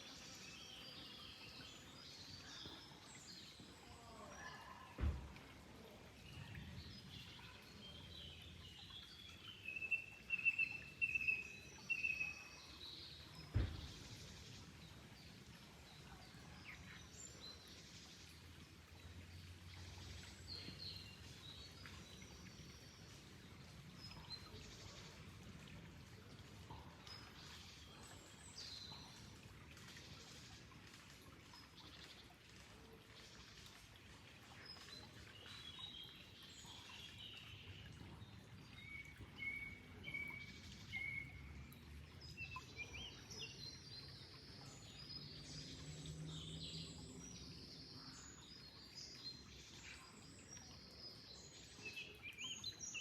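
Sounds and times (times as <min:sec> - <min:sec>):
flowing water: 0:00.0 - 0:53.0
low thump: 0:13.5 - 0:14.1.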